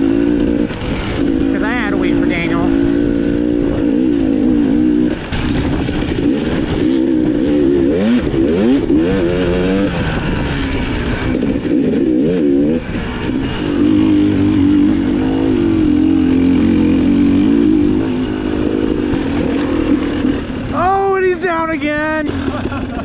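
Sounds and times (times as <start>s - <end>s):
dirt bike engine revving: 0.0s - 23.0s.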